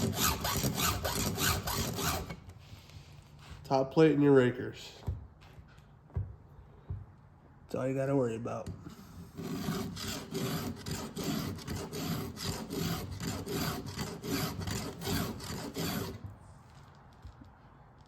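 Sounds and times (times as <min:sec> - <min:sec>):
file rasping on chainsaw chain: 0:00.0 - 0:02.4, 0:09.4 - 0:16.2.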